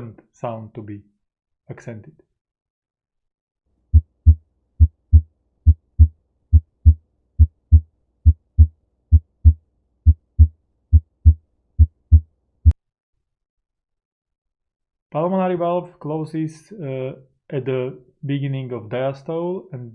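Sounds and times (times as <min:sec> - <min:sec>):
heartbeat through stethoscope: 0:04.0 - 0:12.8.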